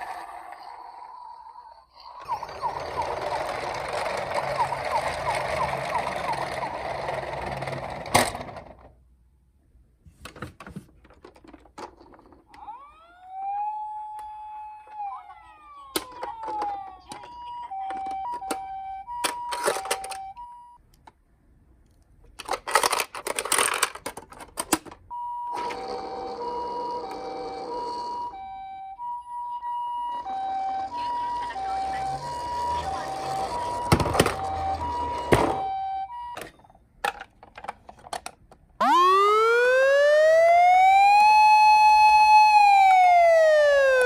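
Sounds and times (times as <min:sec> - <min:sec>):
toy ambulance siren: 0:00.0 - 0:08.2, 0:12.5 - 0:20.8, 0:25.1 - 0:36.7, 0:38.8 - 0:44.0
two-tone hi-lo siren: 0:02.2 - 0:07.3, 0:12.6 - 0:20.4, 0:25.5 - 0:36.4, 0:38.8 - 0:44.0
clicks and handling noises: 0:21.8 - 0:25.0, 0:36.3 - 0:38.7.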